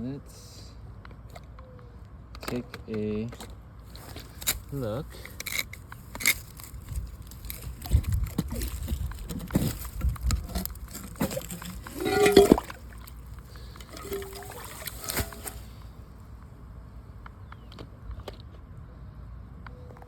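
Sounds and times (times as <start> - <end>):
knocks and scrapes: 3.9 - 15.8
water sloshing and splashing: 5.4 - 15.9.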